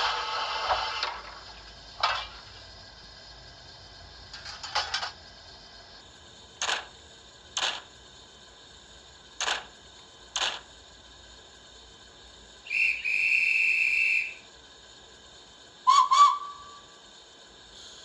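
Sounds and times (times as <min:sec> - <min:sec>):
steam locomotive exhaust beats: 0:00.0 - 0:18.0
steam locomotive whistle: 0:12.6 - 0:14.5, 0:15.8 - 0:17.0.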